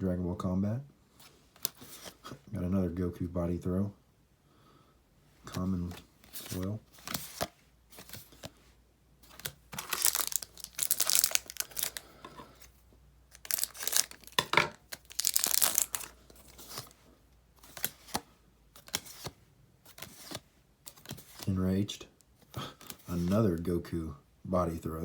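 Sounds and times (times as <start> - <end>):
wrapper ripping and crinkling: 9.3 - 12.4, 13.3 - 16.9.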